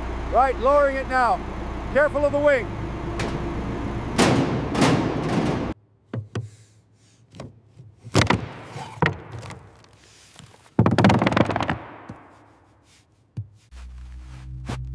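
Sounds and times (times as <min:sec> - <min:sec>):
steady mechanical noise: 0:00.0 - 0:05.8
knocks and clunks: 0:03.1 - 0:06.5, 0:07.3 - 0:09.9.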